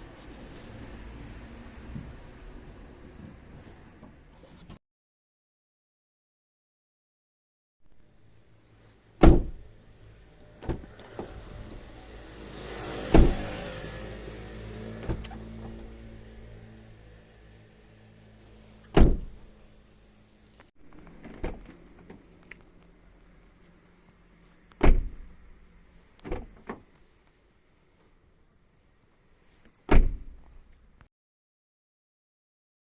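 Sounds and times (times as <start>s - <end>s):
car door shutting with thud: 9.2s - 9.6s, 13.1s - 13.6s, 18.9s - 19.5s, 24.8s - 25.3s, 29.9s - 30.4s.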